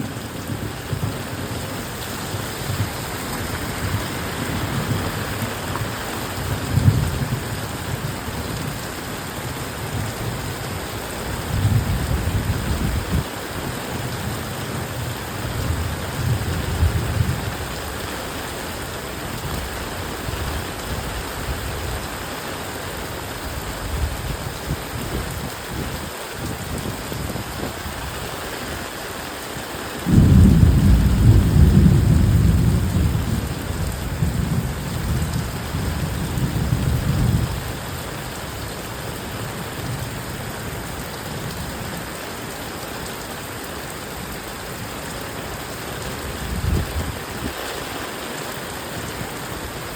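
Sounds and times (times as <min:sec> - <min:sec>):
heavy rain: 0:00.0 - 0:49.9
loud thunderclap: 0:30.1 - 0:33.4
low thunder rumble: 0:30.1 - 0:37.6.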